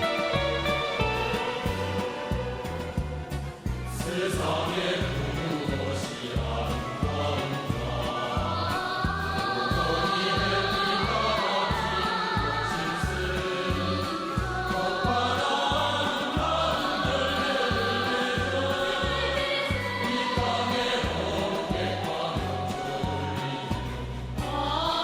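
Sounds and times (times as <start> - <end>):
steady bass beat: 0.0 - 12.6
choir singing pop song: 0.0 - 25.0.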